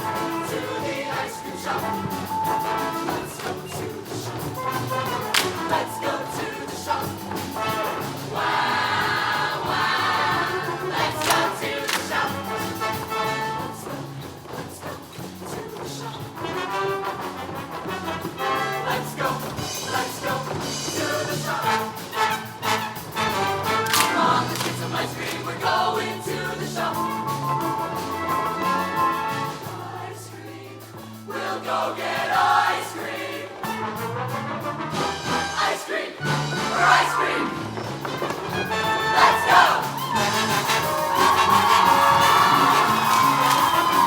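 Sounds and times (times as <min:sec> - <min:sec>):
drum hits: 0:00.0 - 0:13.4
pop band playing: 0:00.0 - 0:30.6, 0:33.9 - 0:44.0
choir singing: 0:00.0 - 0:34.2, 0:35.0 - 0:44.0.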